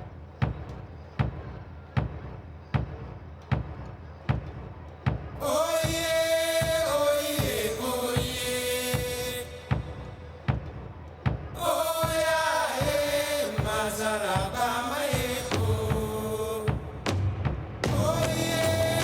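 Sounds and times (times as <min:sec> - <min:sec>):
chanted vocal long notes: 0:05.4 - 0:10.6, 0:11.6 - 0:16.9, 0:17.8 - 0:19.0
slow bass drum beat: 0:09.0 - 0:19.0.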